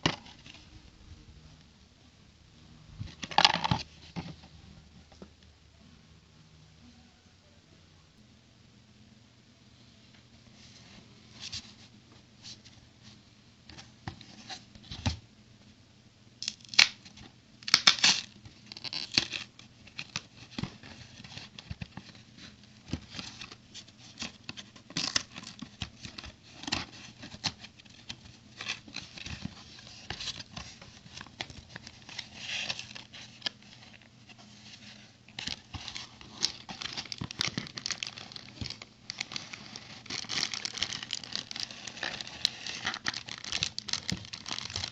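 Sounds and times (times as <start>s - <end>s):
packaging clicks and rustles: 16.4s - 44.9s.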